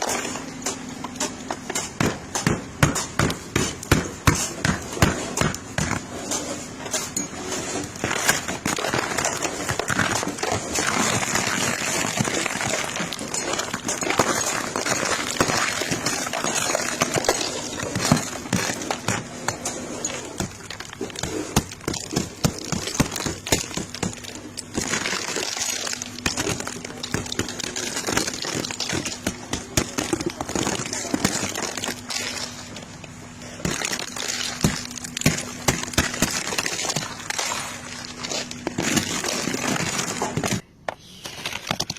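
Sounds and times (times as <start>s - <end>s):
ice cracking: 7.8s - 40.6s.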